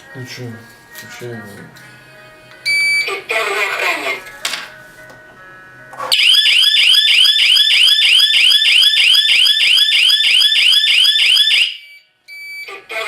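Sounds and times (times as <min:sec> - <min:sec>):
alarm siren whooping: 0:06.1 - 0:12.0.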